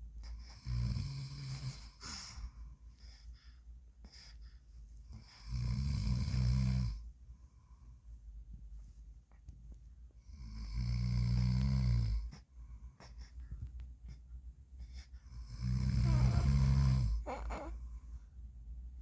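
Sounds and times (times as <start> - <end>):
man snoring: 0.6 - 1.8, 5.4 - 7.0, 10.4 - 12.2, 15.5 - 17.7.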